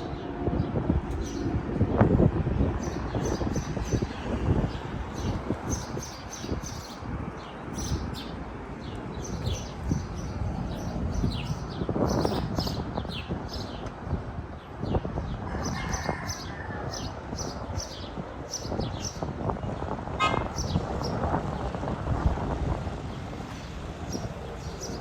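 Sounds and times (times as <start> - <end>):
small birds chirping: 2.8 - 13.8.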